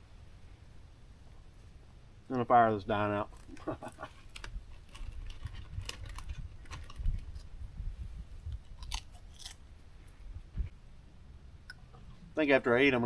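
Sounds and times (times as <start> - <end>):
campfire crackling: 3.2 - 7.6.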